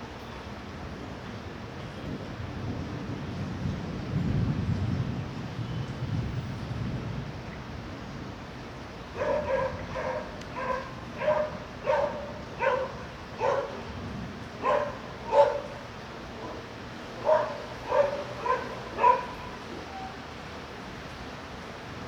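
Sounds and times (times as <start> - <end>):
dog barking: 9.1 - 14.0, 14.6 - 20.2.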